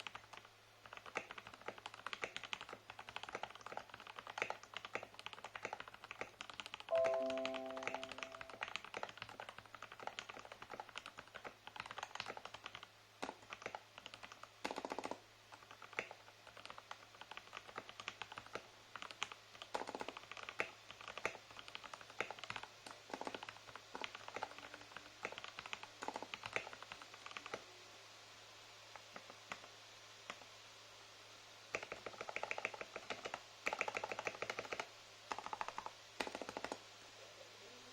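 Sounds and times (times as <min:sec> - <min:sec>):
mechanical keyboard typing: 0:00.0 - 0:27.6, 0:31.7 - 0:36.8.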